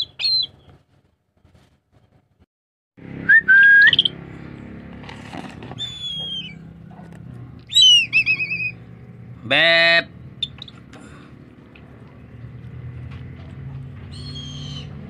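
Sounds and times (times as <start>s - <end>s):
eagle whistled calls: 0.0s - 0.7s, 3.3s - 4.2s, 5.8s - 6.7s, 7.7s - 8.8s, 14.1s - 15.0s.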